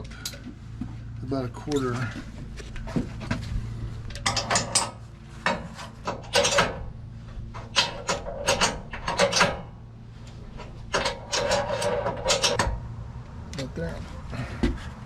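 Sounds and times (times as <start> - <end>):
metal tool scraping: 10.5 - 12.6.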